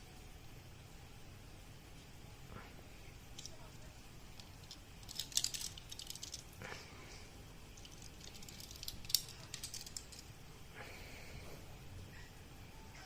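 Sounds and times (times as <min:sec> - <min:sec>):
plastic packaging clicking and crackling: 0:03.4 - 0:06.5, 0:07.8 - 0:10.3.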